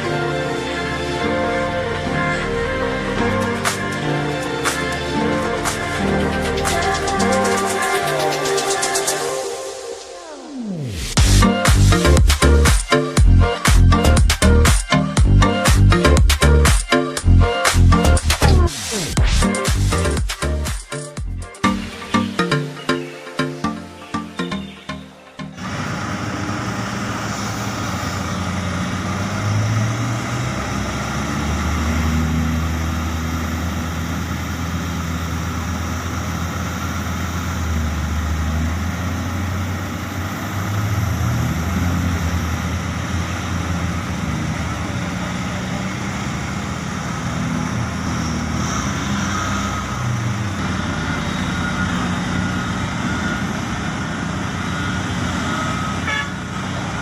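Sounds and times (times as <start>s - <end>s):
heavy diesel engine under load: 25.6s - 57.0s.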